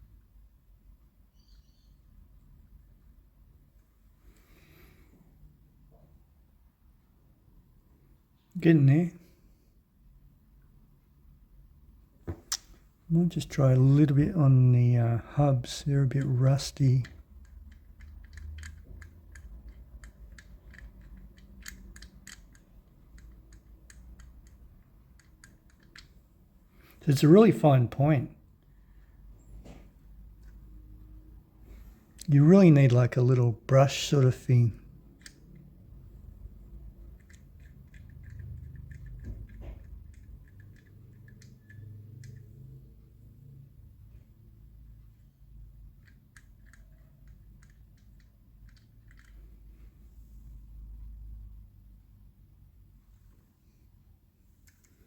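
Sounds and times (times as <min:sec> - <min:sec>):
light clicks and taps: 0:16.1 - 0:26.2, 0:36.3 - 0:42.8, 0:45.9 - 0:49.6.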